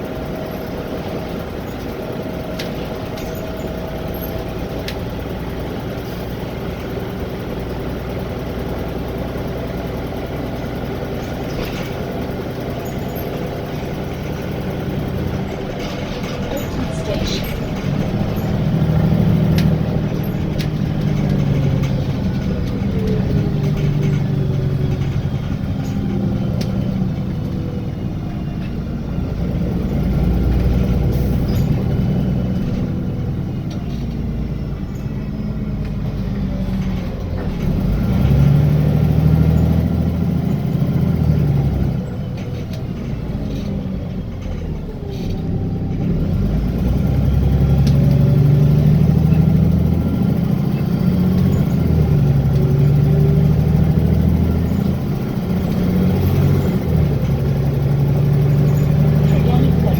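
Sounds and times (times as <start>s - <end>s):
bus engine and transmission: 0.0s - 59.9s.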